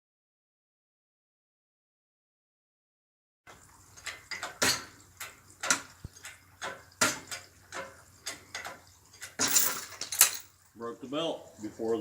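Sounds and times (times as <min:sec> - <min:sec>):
metal hardware clicking and clinking: 0:06.6 - 0:10.6.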